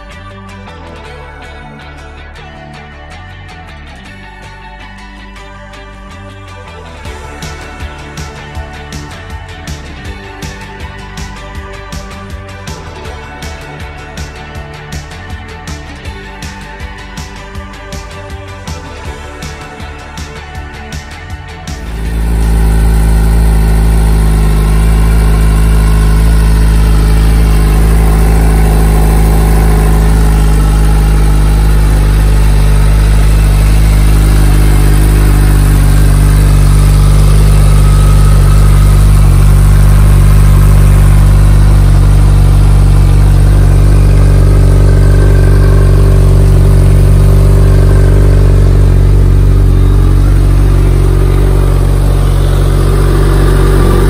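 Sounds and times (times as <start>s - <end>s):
motorcycle engine idling: 6.8s - 54.0s.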